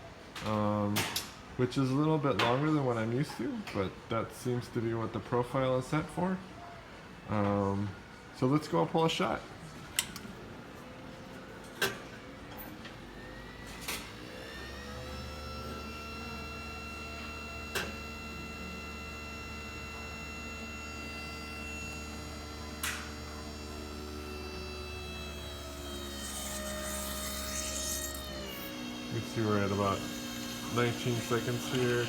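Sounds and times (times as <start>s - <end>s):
espresso machine pump humming: 13.2s - 32.0s.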